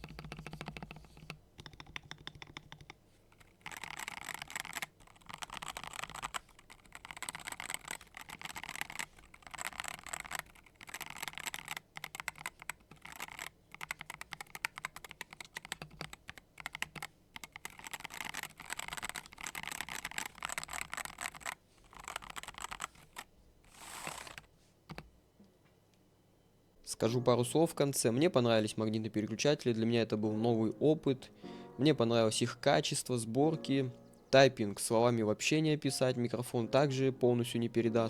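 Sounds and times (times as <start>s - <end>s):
mechanical keyboard typing: 0.0s - 25.1s.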